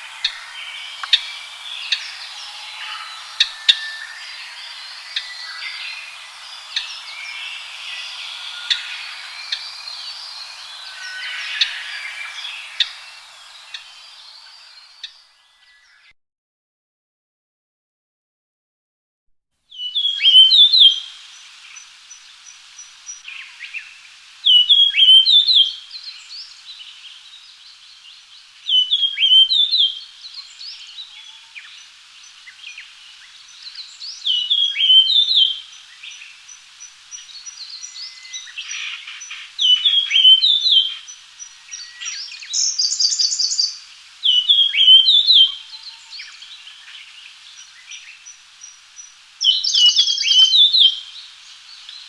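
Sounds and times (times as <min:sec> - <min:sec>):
faint high peeps: 0:00.0 - 0:15.2
high buzzy bird trill: 0:00.0 - 0:15.2
bird whistling song: 0:00.0 - 0:15.9, 0:37.2 - 0:46.6.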